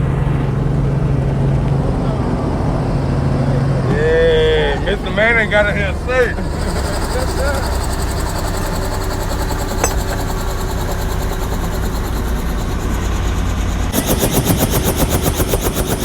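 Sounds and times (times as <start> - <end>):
helicopter engine and rotor drone: 0.1 - 16.0
rotor chopping: 6.6 - 10.7.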